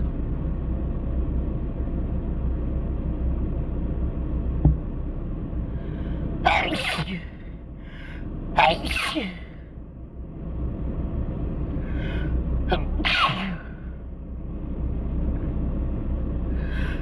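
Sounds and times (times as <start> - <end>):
steady low rumble: 0.0 - 17.0
short thump: 4.6 - 4.9
person sneezing: 6.5 - 7.4, 8.6 - 9.5, 12.7 - 13.8.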